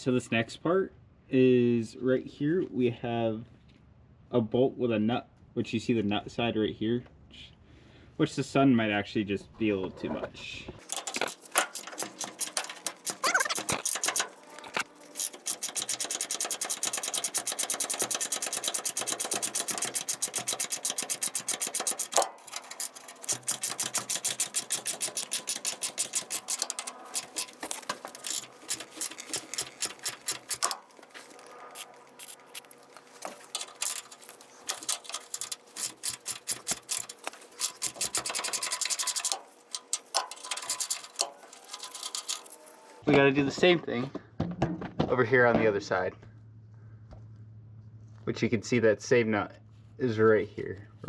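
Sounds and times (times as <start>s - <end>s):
socket ratchet clicking: 10.8s - 42.9s.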